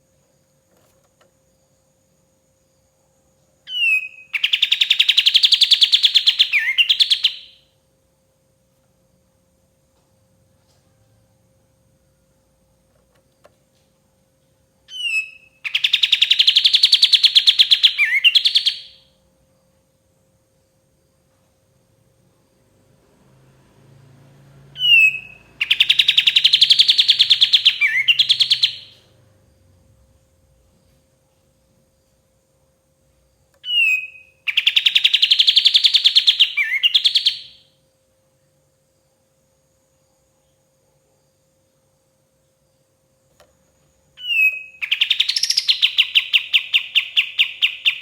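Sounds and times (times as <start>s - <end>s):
faint steady hum: 0.0s - 48.0s
songbird singing rapid trill: 3.6s - 7.7s, 14.8s - 19.2s, 24.8s - 29.2s, 33.6s - 37.7s, 44.1s - 48.0s.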